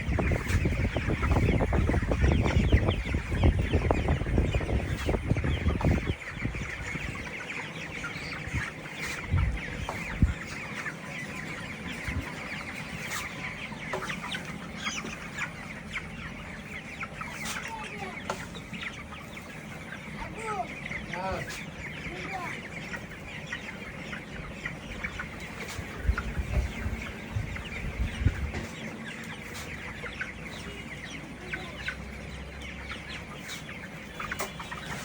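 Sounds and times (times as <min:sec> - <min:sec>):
chickens peeping and clucking: 0:00.0 - 0:35.0.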